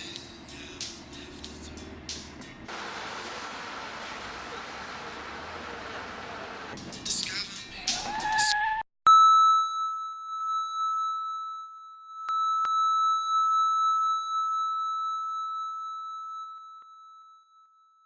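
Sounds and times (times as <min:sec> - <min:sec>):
high-pitched ringing tone: 0:09.1 - 0:18.0.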